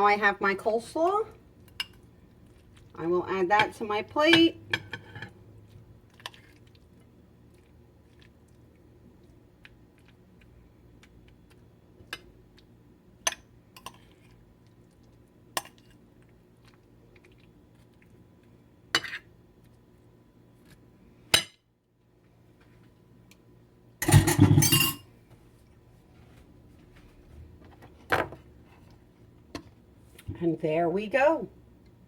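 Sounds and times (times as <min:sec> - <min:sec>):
utensils and dishes clinking: 0:24.0 - 0:25.0.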